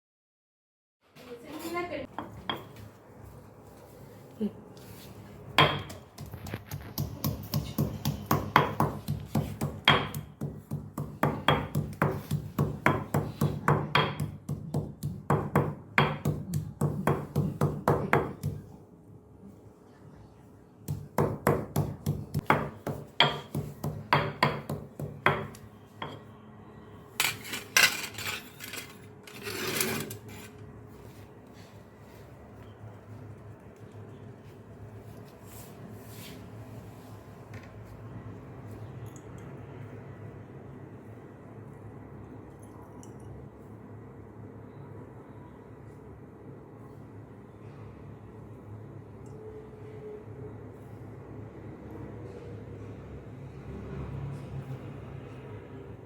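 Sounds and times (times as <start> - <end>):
pestle pounding in a mortar: 5.6 - 18.6, 20.9 - 25.6.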